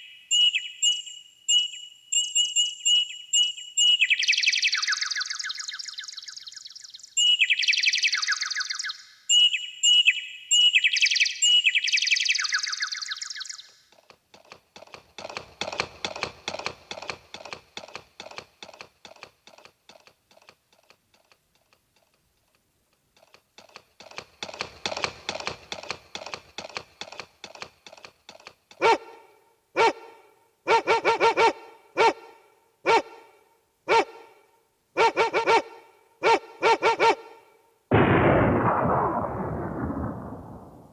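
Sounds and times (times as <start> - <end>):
bird-like chirping and trills: 0.0 - 14.0
rapid clicking taps: 14.0 - 28.8
short bark-like burst: 28.8 - 37.6.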